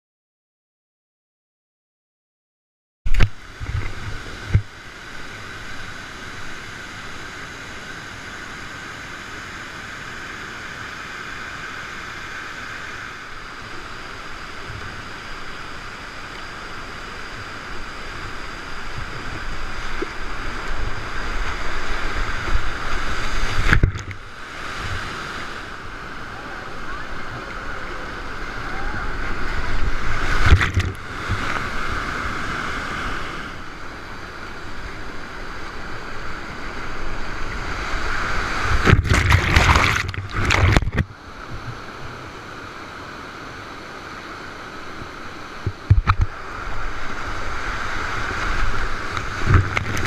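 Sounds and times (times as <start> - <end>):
whitewater rushing: 3.4 - 50.0
wind on microphone: 18.8 - 25.2, 26.8 - 33.0, 37.0 - 42.4, 45.0 - 50.0.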